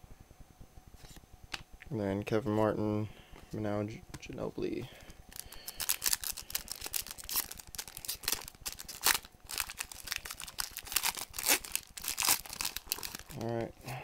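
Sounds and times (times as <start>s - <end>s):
cards rustling: 5.0s - 14.0s
card pack wrapper crinkling: 5.3s - 13.9s.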